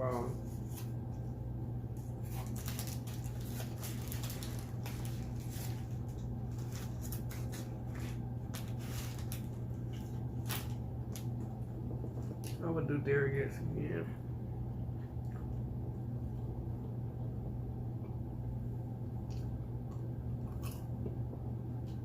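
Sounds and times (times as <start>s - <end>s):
steady low hum: 0.0s - 22.0s
mouth chewing food: 15.0s - 15.7s, 19.2s - 22.0s.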